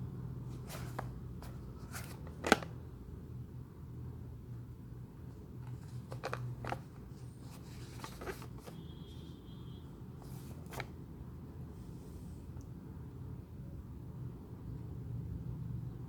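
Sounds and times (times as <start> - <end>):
handling clicks and rustles: 0.5 - 2.7, 5.6 - 8.8.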